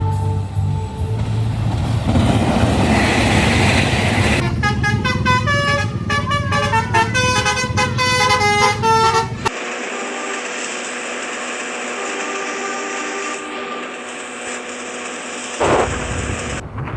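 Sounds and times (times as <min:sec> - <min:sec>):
musical bus horn tune: 0:00.0 - 0:01.5, 0:04.4 - 0:14.5
bus engine running: 0:00.0 - 0:16.7.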